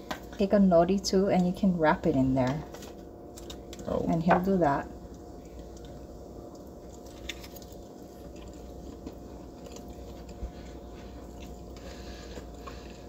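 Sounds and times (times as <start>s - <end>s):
steady low hum: 0.0s - 13.0s
faint chewing: 2.7s - 4.0s, 5.0s - 13.0s.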